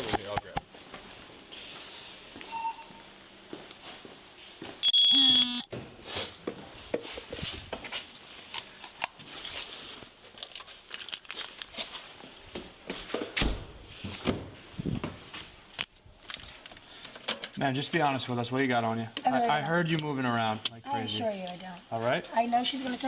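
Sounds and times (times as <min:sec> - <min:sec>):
loud electronic beep: 0:04.8 - 0:05.7
rustling and crinkling: 0:06.0 - 0:17.2.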